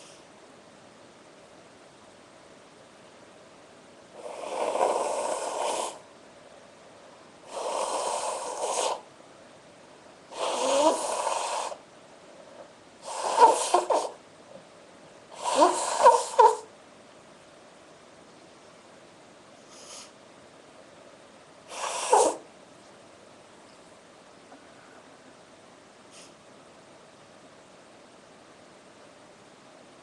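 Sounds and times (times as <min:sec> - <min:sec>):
woman blowing her nose: 0:04.2 - 0:06.0, 0:07.5 - 0:09.1, 0:10.3 - 0:11.8, 0:13.0 - 0:14.2, 0:15.3 - 0:16.7, 0:21.7 - 0:22.4.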